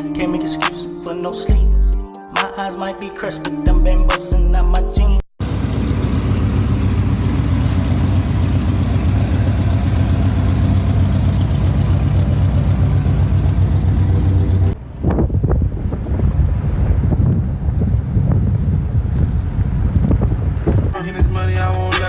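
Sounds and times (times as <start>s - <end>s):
car engine idling: 5.4s - 14.8s
wind on microphone: 14.0s - 21.0s.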